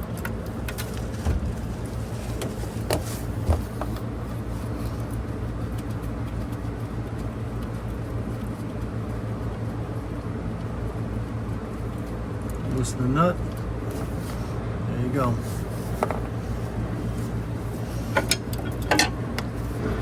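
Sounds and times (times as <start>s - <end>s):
low mechanical hum: 0.0s - 20.0s.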